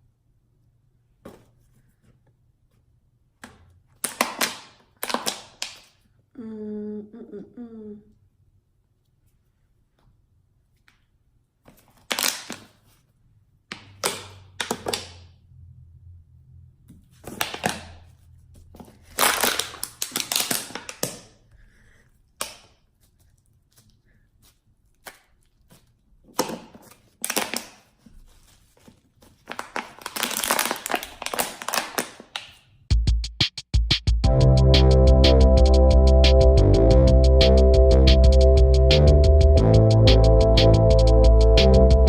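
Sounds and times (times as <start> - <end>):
plastic crinkling: 4.0 - 6.0, 11.6 - 13.1, 17.2 - 21.4, 22.4 - 32.8
hands handling plastic bottle: 22.4 - 32.6.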